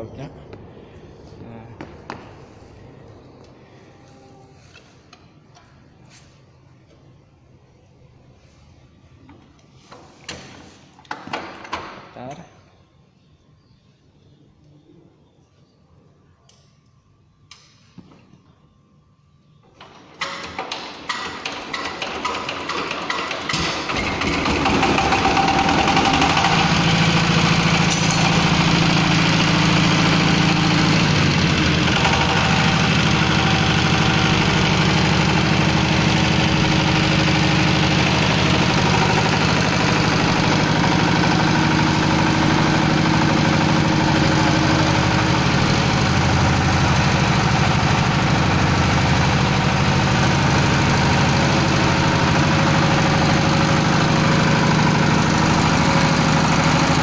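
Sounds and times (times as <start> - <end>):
mixing machine motor humming: 23.5 - 57.0.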